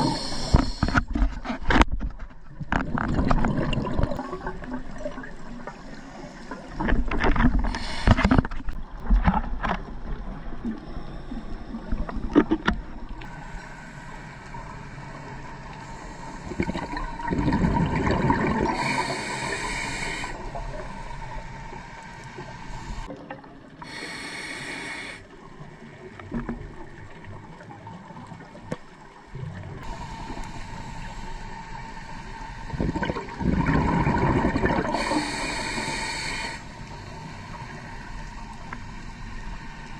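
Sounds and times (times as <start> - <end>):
diver inhaling through regulator: 0.0 - 1.0, 7.6 - 8.6, 18.0 - 23.1, 23.8 - 25.4, 29.8 - 33.4, 34.6 - 38.0
exhaled air bubbling: 2.7 - 8.8, 15.1 - 28.6, 32.6 - 38.7.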